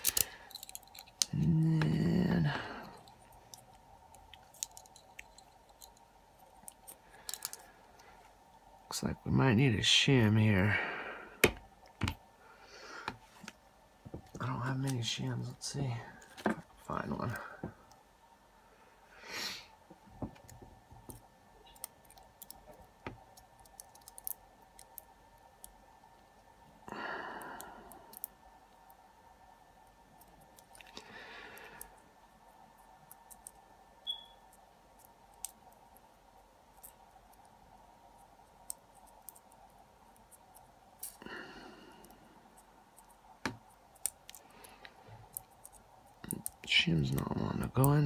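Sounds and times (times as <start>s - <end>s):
small metal tools clicking: 0.0s - 1.4s, 6.6s - 7.7s
faint steady hum: 0.0s - 48.0s.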